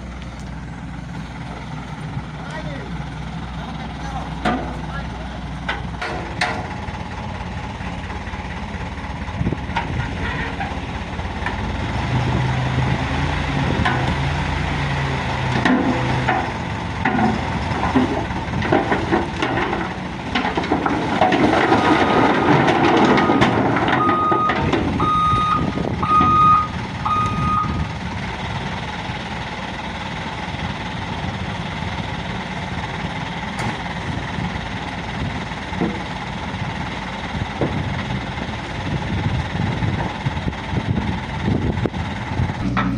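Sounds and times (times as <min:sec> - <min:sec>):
diesel truck engine revving: 0:00.0 - 0:42.9
reversing alarm beeps: 0:23.2 - 0:27.9.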